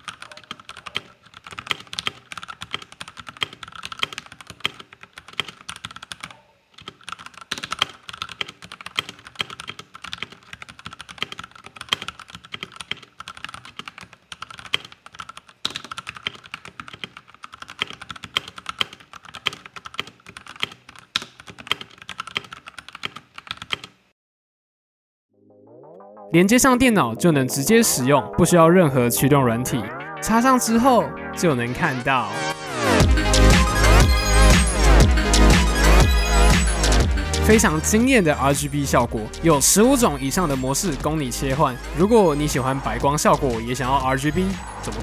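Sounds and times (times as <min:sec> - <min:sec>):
mechanical keyboard typing: 0:00.0 - 0:24.0.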